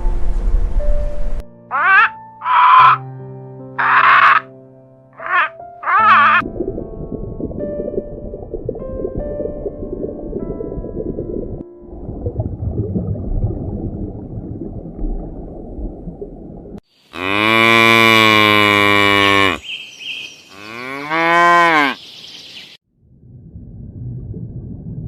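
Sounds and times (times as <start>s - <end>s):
low noisy rumble: 0.0s - 1.5s
cattle mooing: 5.2s - 6.4s, 17.2s - 19.6s, 20.5s - 22.0s.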